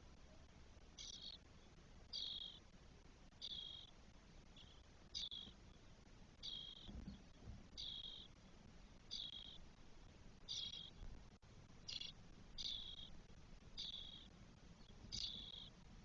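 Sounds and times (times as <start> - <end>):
nestlings begging calls: 1.0 - 1.4, 2.1 - 2.6, 3.4 - 3.9, 4.6 - 5.6, 6.4 - 6.9, 7.8 - 8.4, 9.1 - 9.7, 10.4 - 11.1, 11.8 - 13.2, 13.8 - 15.8.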